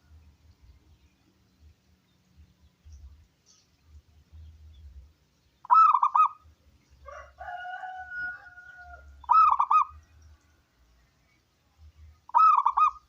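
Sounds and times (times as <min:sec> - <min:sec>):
dove cooing: 0:05.6 - 0:06.4, 0:07.1 - 0:10.0, 0:12.3 - 0:13.0.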